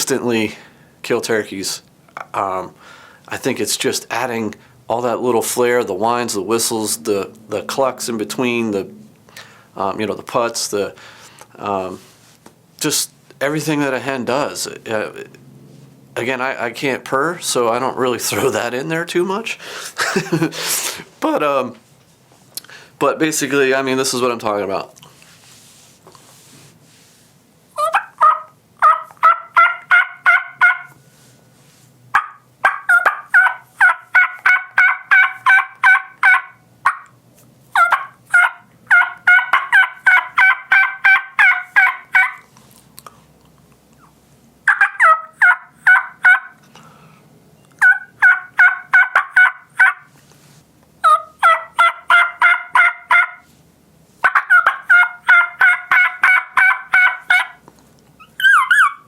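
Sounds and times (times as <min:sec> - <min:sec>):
turkey yelps on a mouth call: 0:27.8 - 0:31.0, 0:32.1 - 0:42.5, 0:44.0 - 0:46.6, 0:47.8 - 0:50.1, 0:51.0 - 0:53.5, 0:54.2 - 0:57.6, 0:58.2 - 0:59.0.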